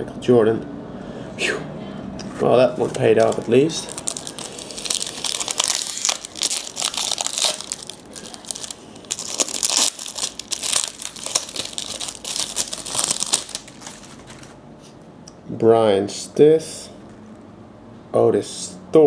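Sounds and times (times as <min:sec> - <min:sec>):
plastic wrapper crinkling and tearing: 0:02.7 - 0:14.6.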